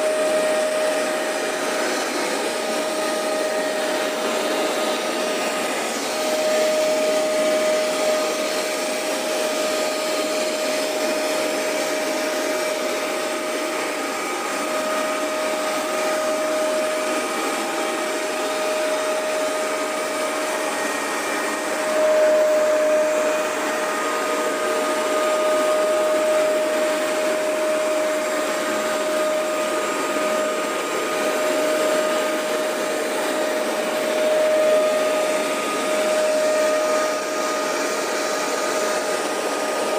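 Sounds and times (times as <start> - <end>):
carpet cleaner whining: 0.0 - 39.9.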